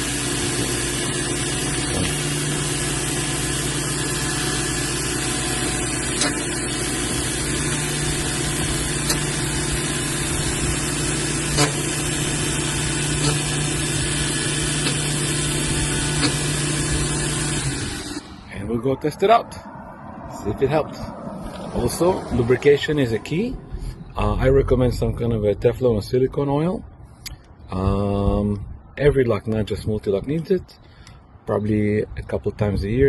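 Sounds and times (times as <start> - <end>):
key-cutting machine motor hum: 0.0 - 18.5.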